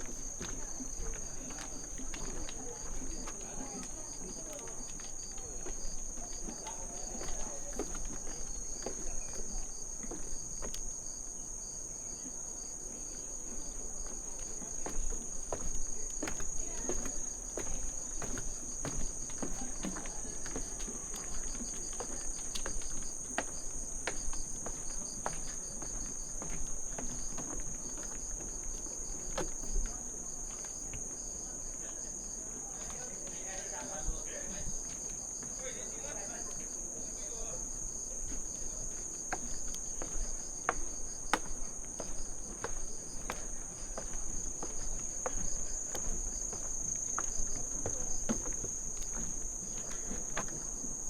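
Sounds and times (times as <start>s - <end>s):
footsteps on path: 0.0s - 11.8s, 13.1s - 31.2s, 37.8s - 51.0s
insects trilling: 0.0s - 51.0s.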